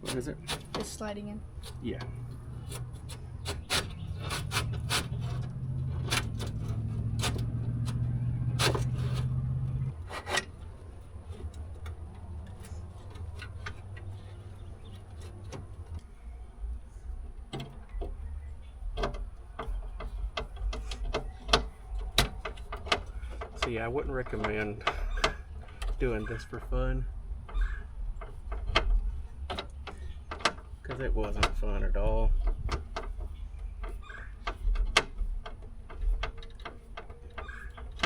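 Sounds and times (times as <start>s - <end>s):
window glass clicks and knocks: 18.8s - 26.1s, 27.4s - 38.0s.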